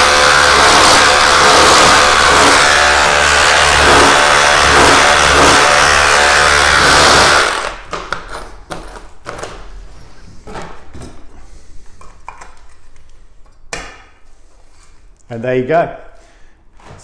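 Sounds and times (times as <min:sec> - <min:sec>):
rotary hammer drill chiselling brick: 0:00.0 - 0:07.9.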